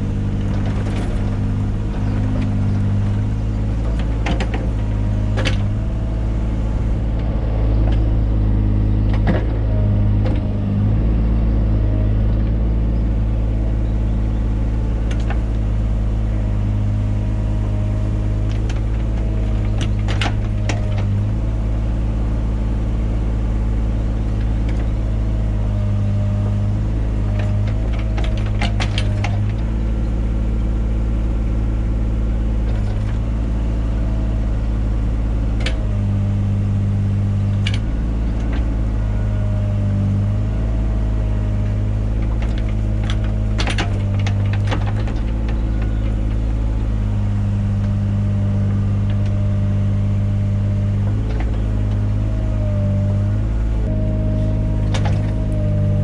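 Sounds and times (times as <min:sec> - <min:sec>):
excavator engine running: 0:00.0 - 0:56.0
sharp clicks and knocks digging: 0:03.8 - 0:06.0, 0:18.4 - 0:21.3, 0:26.5 - 0:29.8, 0:41.9 - 0:46.6, 0:54.6 - 0:56.0.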